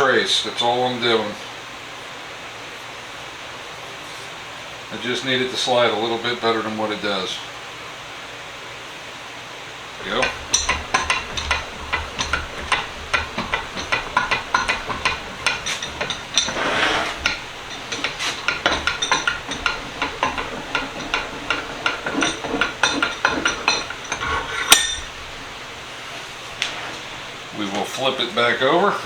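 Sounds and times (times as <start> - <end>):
metal clank: 10.0 - 27.6
metal vise parts clicking: 10.0 - 27.6.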